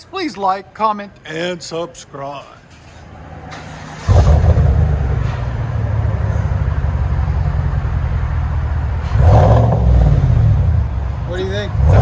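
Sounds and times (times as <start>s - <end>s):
car engine starting and idling: 2.7s - 12.0s.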